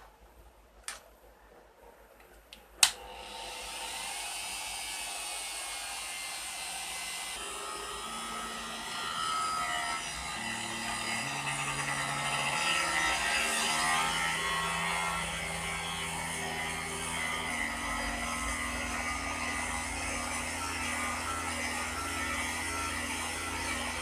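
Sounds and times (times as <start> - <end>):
click: 2.2 - 3.0
spindle whirr and cutting hiss: 2.8 - 24.0.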